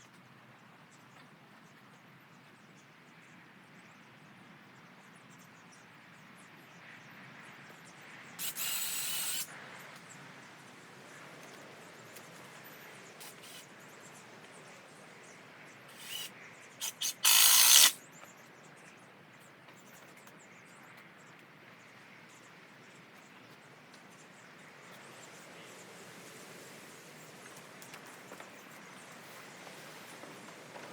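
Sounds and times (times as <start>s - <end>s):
cordless drill running: 8.4s - 9.5s, 13.2s - 13.6s, 15.9s - 18.0s
drill trigger taps: 16.0s - 18.0s.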